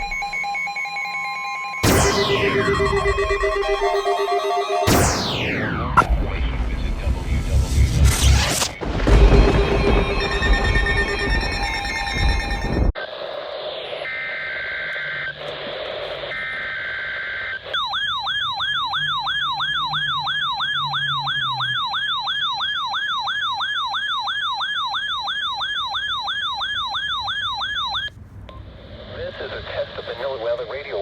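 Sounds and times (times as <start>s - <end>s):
radio static: 0.0s - 0.4s, 1.8s - 17.8s, 28.8s - 31.0s
electronic siren alarm: 0.0s - 13.0s, 16.3s - 28.1s
warbly digital data tones: 0.0s - 15.5s.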